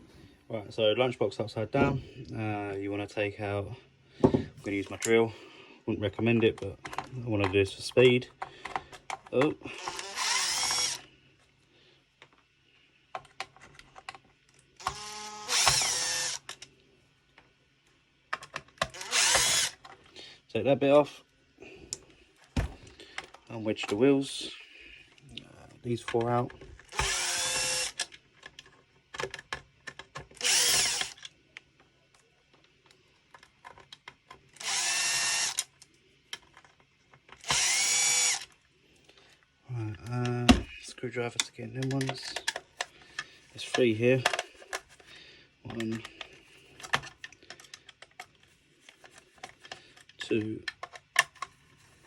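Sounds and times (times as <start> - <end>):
cordless drill running: 9.7 - 11.1, 14.8 - 16.5, 18.9 - 19.8, 26.9 - 28.1, 30.4 - 31.2, 34.6 - 35.6, 37.4 - 38.6.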